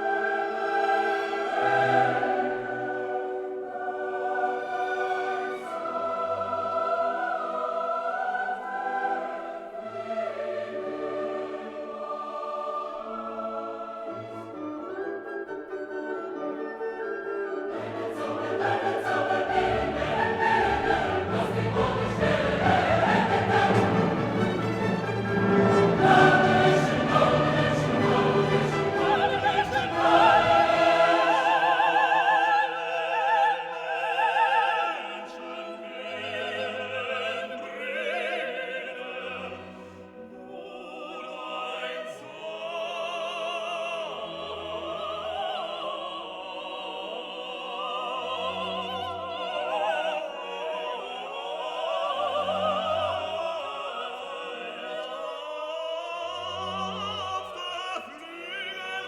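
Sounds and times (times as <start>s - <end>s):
orchestra: 0.0s - 59.0s
operatic singing voice: 17.7s - 59.0s.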